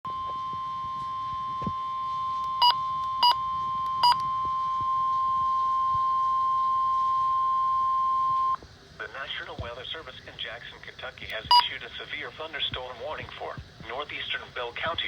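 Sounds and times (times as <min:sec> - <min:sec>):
steady warning alarm tone: 0:00.1 - 0:08.6, 0:11.5 - 0:11.7
short sharp beeps: 0:02.5 - 0:04.3, 0:11.5 - 0:11.7.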